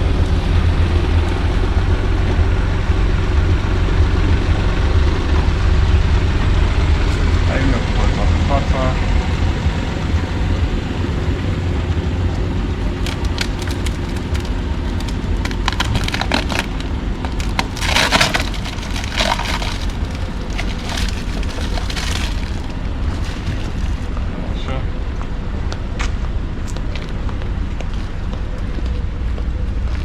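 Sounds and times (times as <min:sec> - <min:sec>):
low rumble: 0:00.0 - 0:30.0
plastic crackling and clicking: 0:12.9 - 0:24.2.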